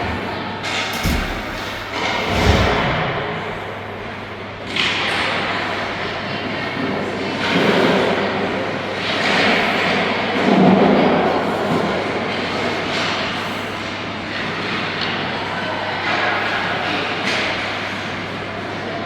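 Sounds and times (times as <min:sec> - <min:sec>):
steady low hum: 0:00.0 - 0:13.7.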